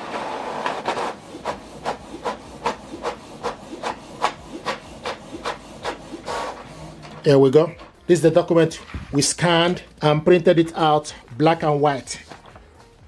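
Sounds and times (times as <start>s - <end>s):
printer paper feed: 0.0s - 8.0s
print head swishing: 0.0s - 12.5s.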